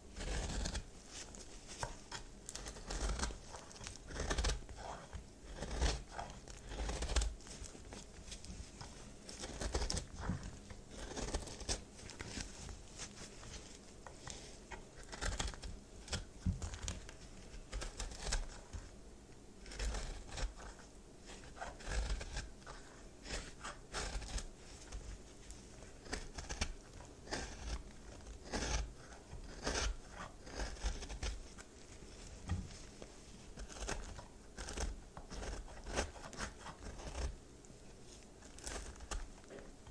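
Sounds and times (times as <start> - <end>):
soap crunching and crackling: 0.2 - 13.6, 15.0 - 18.6, 19.7 - 20.8, 21.4 - 25.0, 26.0 - 28.8, 29.5 - 31.4, 33.5 - 37.3, 38.4 - 39.9.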